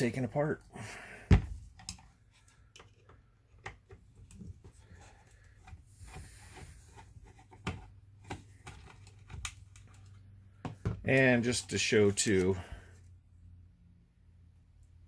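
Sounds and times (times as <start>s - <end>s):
loud thunk: 1.3s - 1.6s.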